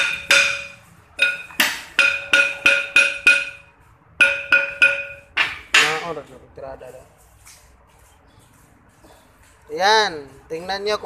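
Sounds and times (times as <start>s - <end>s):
hammer striking metal: 0.0s - 6.2s.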